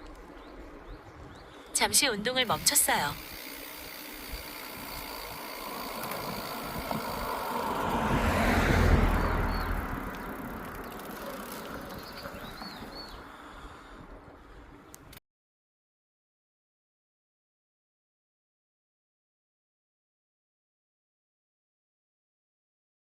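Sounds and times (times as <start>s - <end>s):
road vehicle passing by: 2.6s - 13.3s.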